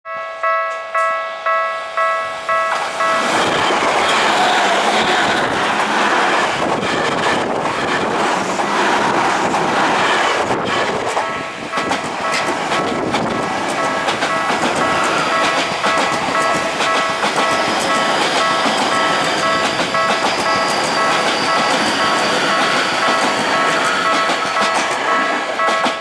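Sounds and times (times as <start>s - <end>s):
level crossing warning bell: 0.1s - 6.2s, 11.2s - 12.6s, 13.8s - 26.0s
electric train passing: 0.1s - 26.0s
wheel-on-rail noise: 2.5s - 26.0s.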